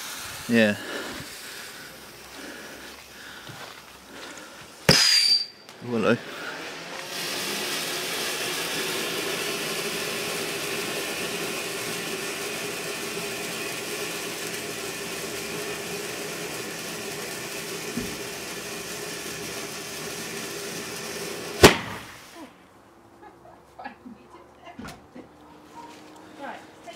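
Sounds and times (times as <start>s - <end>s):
firework fountain hissing sparks: 0.0s - 3.3s, 6.0s - 22.5s
small firework pop: 21.6s - 22.2s.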